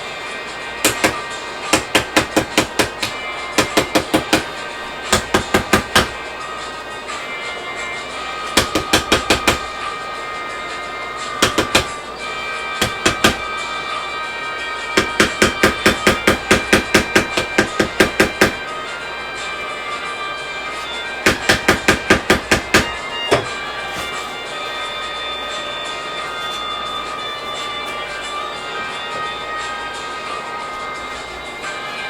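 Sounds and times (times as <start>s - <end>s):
background music: 0.0s - 32.0s
hammer striking wardrobe panels: 0.8s - 6.2s, 8.4s - 9.8s, 11.4s - 12.0s, 12.8s - 13.5s, 15.0s - 18.6s, 21.2s - 24.2s.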